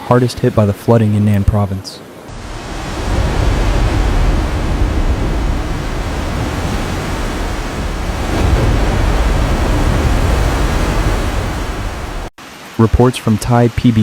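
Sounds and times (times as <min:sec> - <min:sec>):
floodwater rushing roar: 0:02.3 - 0:12.4.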